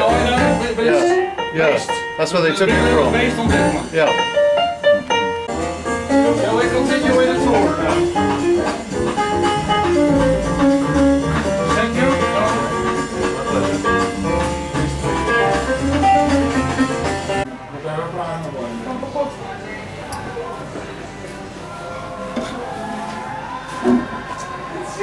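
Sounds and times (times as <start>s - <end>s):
instrumental music: 0.0s - 17.6s.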